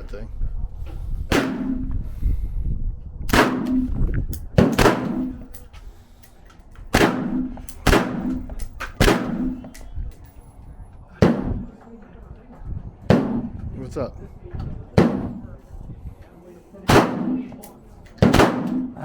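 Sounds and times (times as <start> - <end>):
gunshots with echo: 1.3 - 1.9, 3.3 - 4.0, 4.6 - 5.5, 6.9 - 9.7, 13.1 - 13.6, 15.0 - 15.4, 16.9 - 17.6, 18.2 - 19.0.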